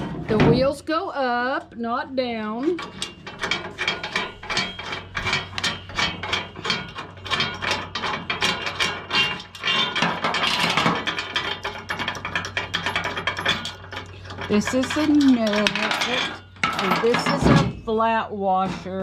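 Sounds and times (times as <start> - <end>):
metal parts clinking and knocking: 2.6 - 17.9.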